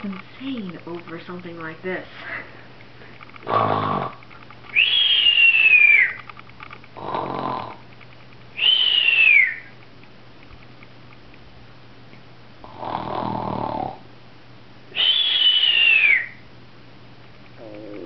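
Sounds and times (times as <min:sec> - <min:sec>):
rasping snore: 0:03.4 - 0:04.2, 0:07.0 - 0:07.8, 0:12.6 - 0:14.0
falling whistle on out-breath: 0:04.7 - 0:06.2, 0:08.6 - 0:09.7, 0:15.0 - 0:16.4.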